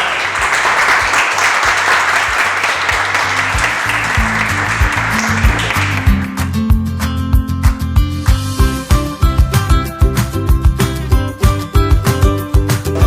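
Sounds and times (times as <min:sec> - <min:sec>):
applause: 0:00.0 - 0:08.5
background music with steady beat: 0:03.8 - 0:13.0.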